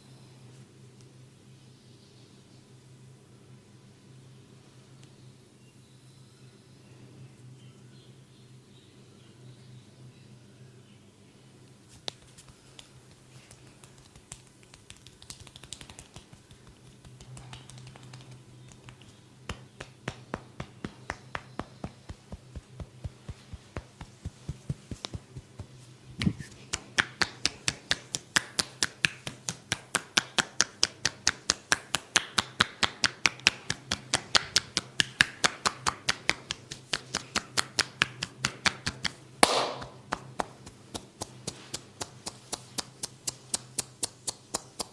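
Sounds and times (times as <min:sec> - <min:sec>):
hands slapping a body: 0:11.9 - 0:44.9.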